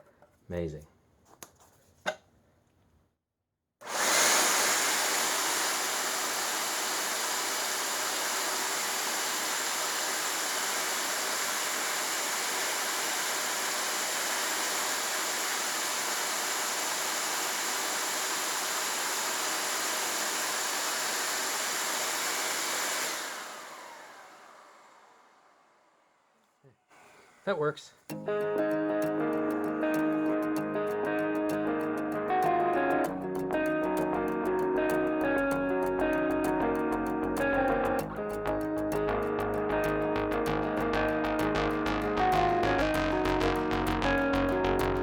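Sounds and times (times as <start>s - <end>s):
vacuum cleaner running: 3.8s - 26.2s, 39.8s - 45.0s.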